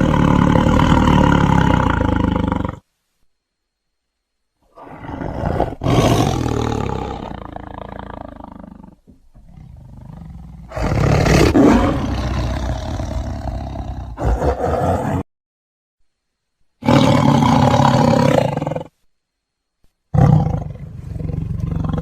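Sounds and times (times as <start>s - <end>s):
big cat roaring: 0.0s - 2.8s, 4.7s - 15.2s, 16.8s - 18.9s, 20.1s - 22.0s.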